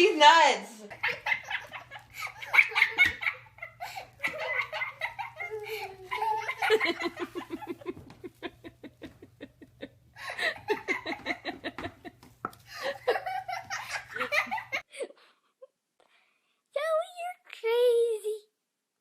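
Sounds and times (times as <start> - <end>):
person laughing hard: 0.9 - 15.2.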